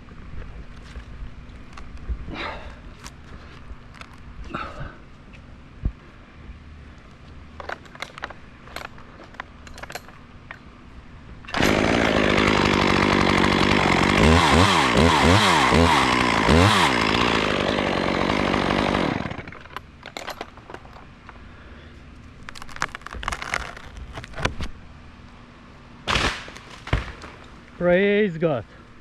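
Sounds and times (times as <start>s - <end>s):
chainsaw running: 11.5s - 19.8s.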